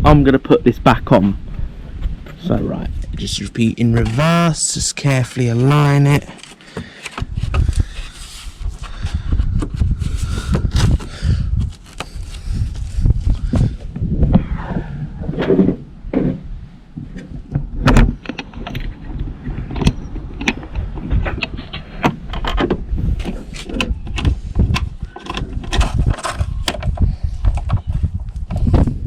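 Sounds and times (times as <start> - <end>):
plastic parts clicking and rattling: 5.2 - 8.2, 17.9 - 27.9.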